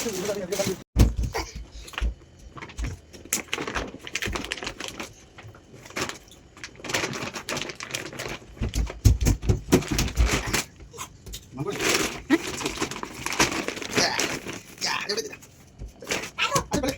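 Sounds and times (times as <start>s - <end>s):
packaging crackling: 2.5s - 9.0s, 11.6s - 16.9s.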